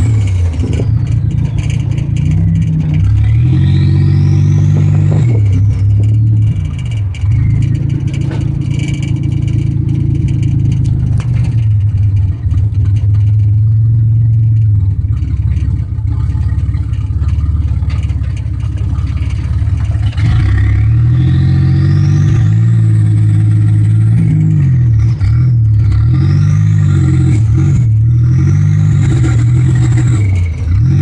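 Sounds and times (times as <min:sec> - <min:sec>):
high whine rising in pitch: 0:00.0 - 0:11.9
car engine idling roughly: 0:00.0 - 0:21.8, 0:23.1 - 0:31.0.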